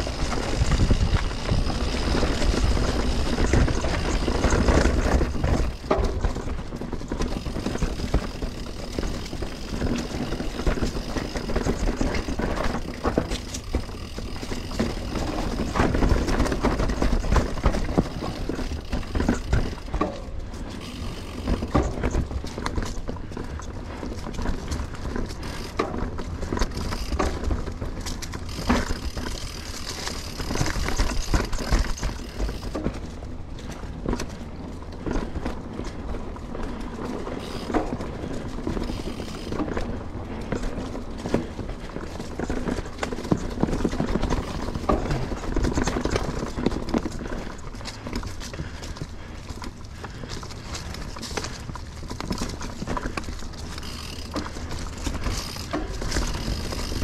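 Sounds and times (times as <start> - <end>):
wind rumbling on microphone: 0.0 - 20.0
bike rattling over bumps: 0.0 - 57.0
tyres on dirt: 0.0 - 57.0.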